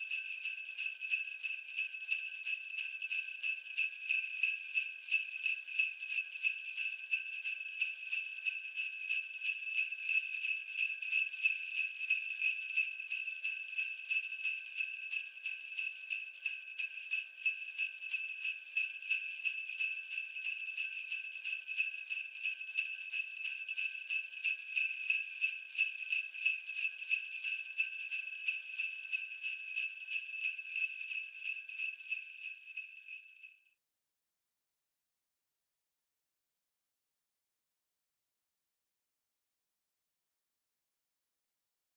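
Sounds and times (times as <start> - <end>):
sleigh bells jingling: 8.4 - 33.5.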